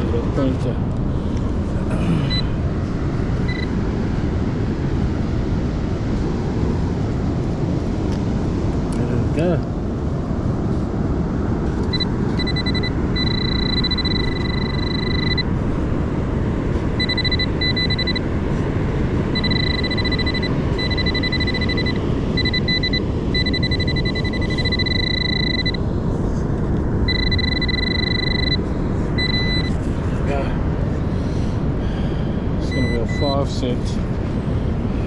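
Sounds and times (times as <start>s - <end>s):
pinpointer high electronic beep: 2.3s - 2.5s, 3.5s - 3.7s, 11.9s - 15.5s, 17.0s - 18.3s, 19.3s - 25.8s, 27.1s - 29.8s, 32.6s - 33.4s.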